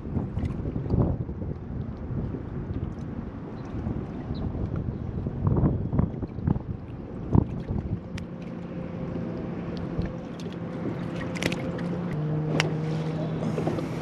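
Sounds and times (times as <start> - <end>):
boat motor running: 0.0 - 14.0.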